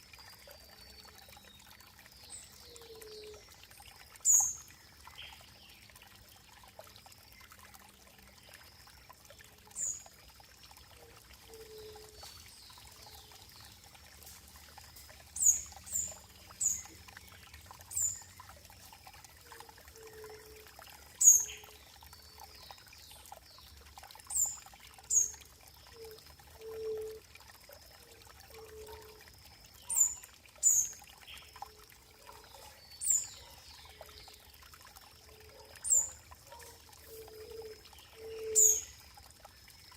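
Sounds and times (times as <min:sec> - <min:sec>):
water trickling: 0:00.0 - 0:39.9
bird chirping: 0:15.4 - 0:18.2.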